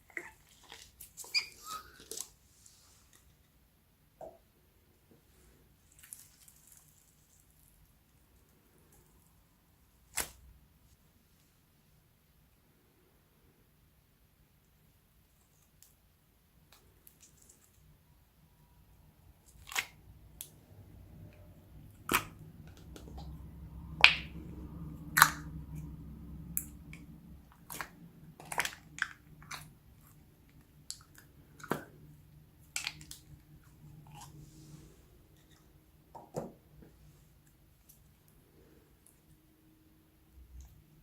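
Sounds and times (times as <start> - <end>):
low steady hum: 0.0 - 41.0
slime squished by hand: 10.0 - 10.5, 19.4 - 34.6.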